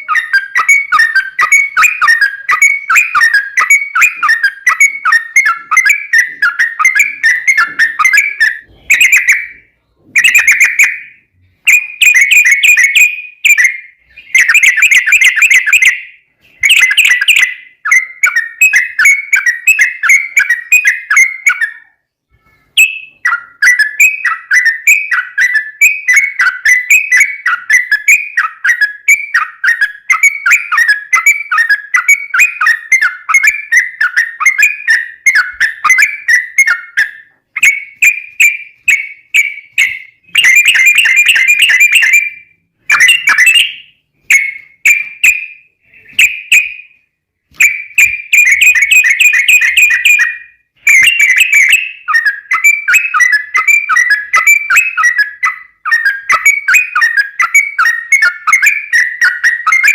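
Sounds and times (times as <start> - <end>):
bird singing bubbly notes: 0.0 - 22.0, 22.6 - 46.9.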